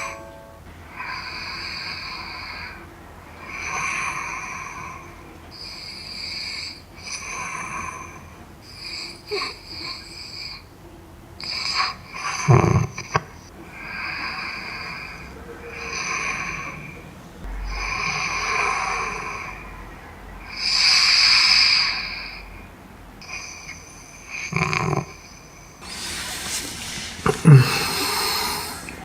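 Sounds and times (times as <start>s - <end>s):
man breathing loudly: 13.6s - 22.8s, 27.3s - 29.0s
loud snort: 23.2s - 25.2s, 27.2s - 28.9s.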